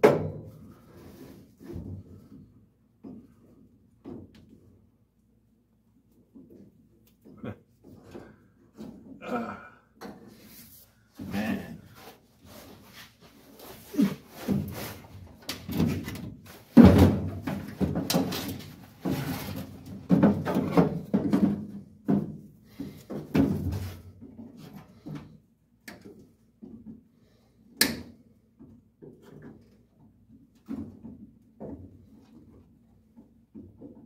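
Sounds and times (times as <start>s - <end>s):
clunks knocks and scraping: 11.1s - 25.4s.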